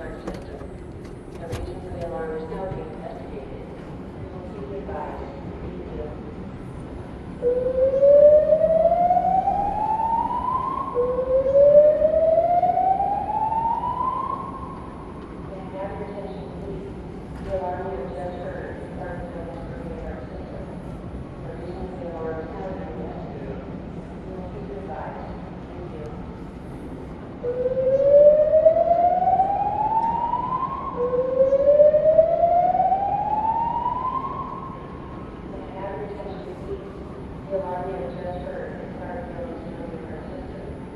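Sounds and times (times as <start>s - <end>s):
fire alarm slow-whoop tone: 7.4s - 15.0s, 27.4s - 35.0s.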